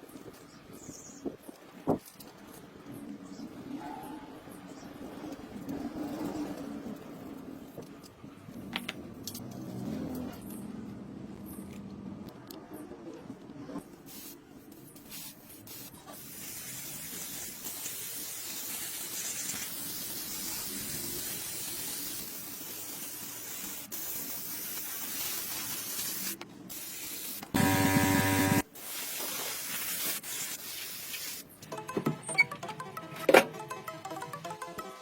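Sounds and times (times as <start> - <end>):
spraying hiss: 15.0 - 31.5
loud buzzing tone: 27.6 - 28.6
musical notes: 31.7 - 35.0.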